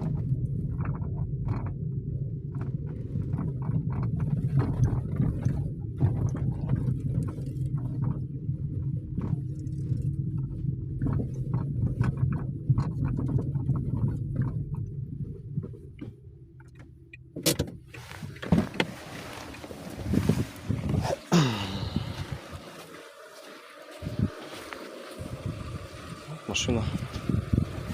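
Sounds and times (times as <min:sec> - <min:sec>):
road rumble inside car: 0:00.0 - 0:27.9
steering knocks: 0:10.5 - 0:21.2.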